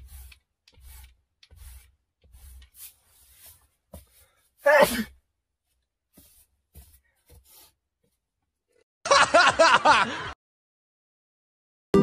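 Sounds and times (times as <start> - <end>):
person laughing in bursts: 9.1 - 10.4.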